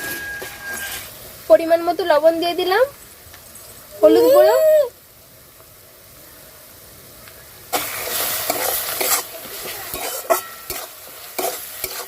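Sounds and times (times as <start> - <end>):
paste sizzling in hot oil: 0.0 - 4.0, 7.6 - 12.0
spatula scraping and knocking pan: 7.8 - 12.0.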